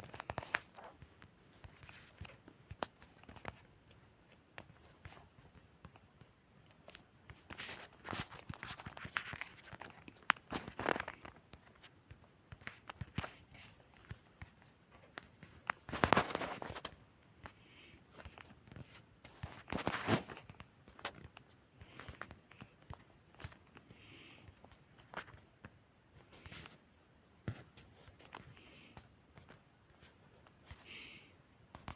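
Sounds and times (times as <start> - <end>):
rustling and scuffing: 19.7 - 20.4.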